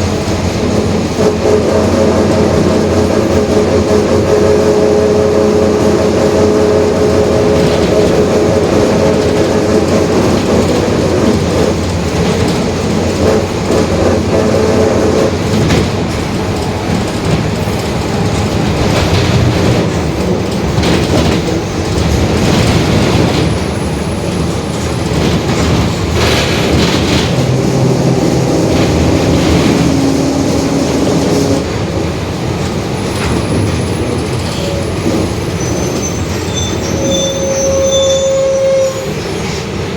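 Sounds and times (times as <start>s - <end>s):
bus diesel engine running: 0.0s - 39.9s
knocks and rattles: 7.5s - 31.6s.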